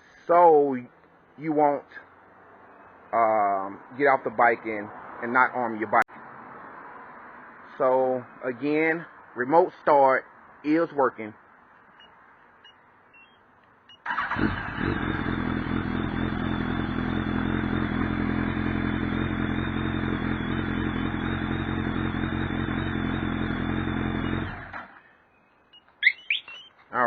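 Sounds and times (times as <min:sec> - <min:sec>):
motorcycle engine idling: 0:14.0 - 0:25.0.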